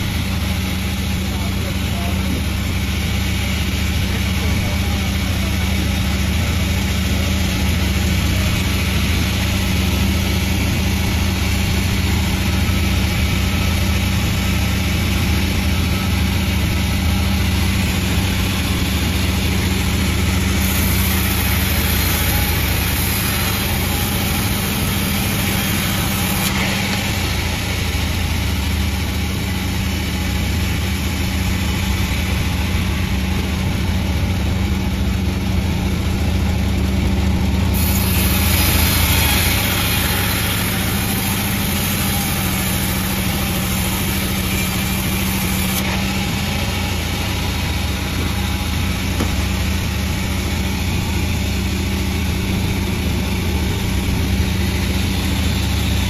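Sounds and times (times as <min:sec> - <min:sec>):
sawmill humming: 0:00.0 - 0:56.0
bright hiss: 0:07.9 - 0:32.9, 0:37.8 - 0:56.0.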